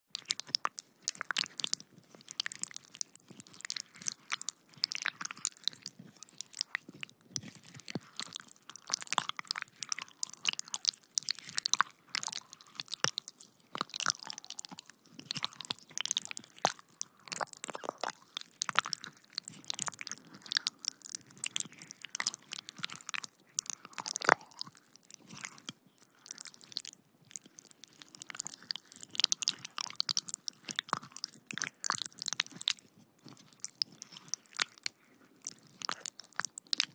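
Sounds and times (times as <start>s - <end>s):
wet squelching crunches: 0.2s - 25.6s.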